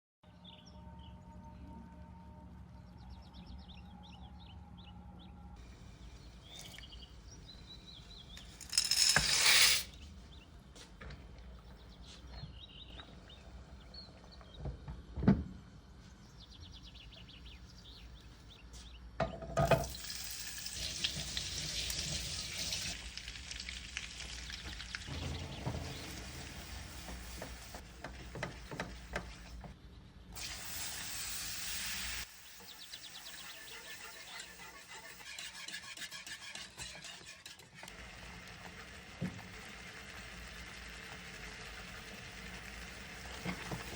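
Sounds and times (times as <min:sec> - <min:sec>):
birds chirping: 0:02.9 - 0:08.6, 0:16.0 - 0:19.2
food sizzling in a pan: 0:19.9 - 0:27.8, 0:30.4 - 0:33.4, 0:38.2 - 0:43.9.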